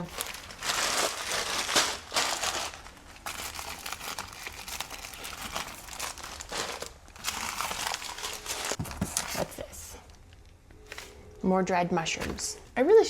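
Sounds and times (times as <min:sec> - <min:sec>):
plastic packaging crinkling: 0:00.0 - 0:09.7.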